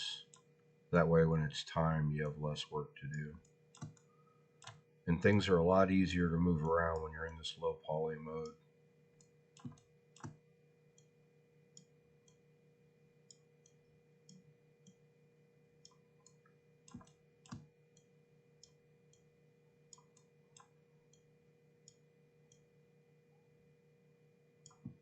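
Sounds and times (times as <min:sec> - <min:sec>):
faint electrical hum: 0:00.0 - 0:25.0
mouse and keyboard clicks: 0:03.8 - 0:04.8, 0:15.9 - 0:17.7, 0:24.7 - 0:25.0.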